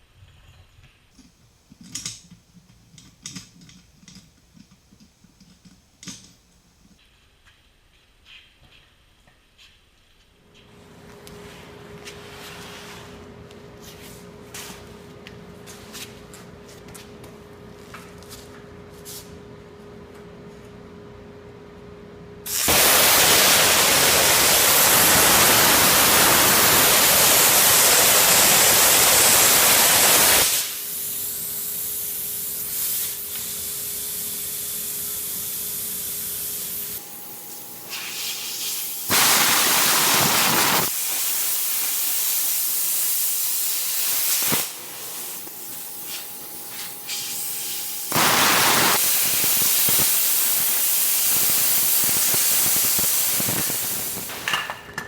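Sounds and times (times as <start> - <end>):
torch air rushing: 22.5 - 30.8, 37.9 - 41.2, 47.1 - 54.4
plasma cutter hissing: 22.5 - 54.6.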